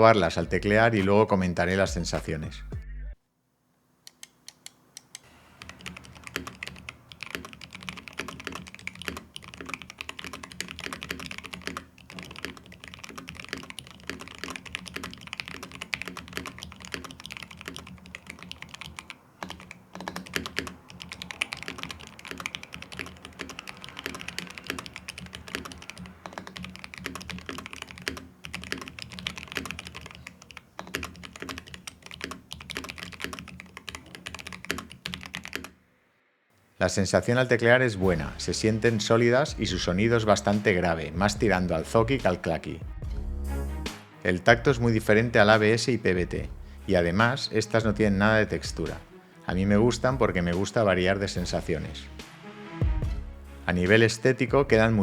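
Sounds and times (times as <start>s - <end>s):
typing on mechanical keyboard: 4.1s - 35.8s.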